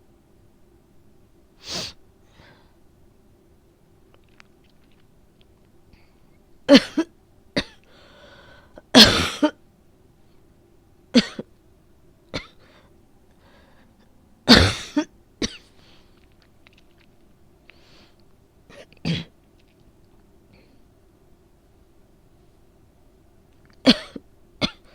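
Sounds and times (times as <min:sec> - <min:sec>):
woman coughing: 0:06.7 - 0:07.8, 0:08.9 - 0:09.6, 0:11.2 - 0:11.5, 0:12.4 - 0:12.6, 0:14.5 - 0:15.7, 0:18.7 - 0:19.3, 0:23.9 - 0:24.9.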